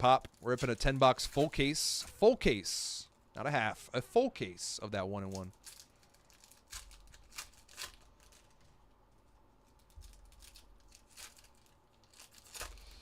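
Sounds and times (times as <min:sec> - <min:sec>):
wrappers crinkling and tearing: 0:00.0 - 0:01.8, 0:05.2 - 0:13.0.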